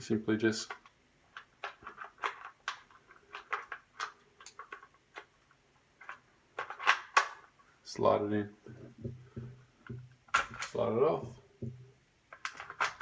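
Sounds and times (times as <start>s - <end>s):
plastic clicks and scrapes: 0.6s - 7.5s, 9.8s - 10.8s, 12.3s - 13.0s.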